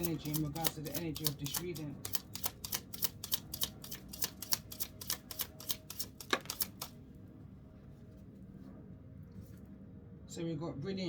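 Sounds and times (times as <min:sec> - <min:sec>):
cards being shuffled: 0:00.0 - 0:06.9.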